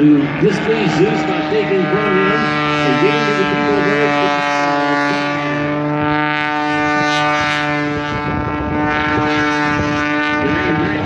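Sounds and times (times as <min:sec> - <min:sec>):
propeller plane engine droning: 0:00.0 - 0:11.0.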